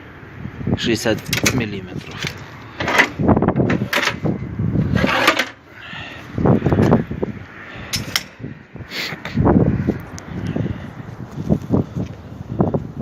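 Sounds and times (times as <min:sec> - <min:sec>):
metal drawers knocking and rattling: 0:01.2 - 0:04.4, 0:05.0 - 0:05.6.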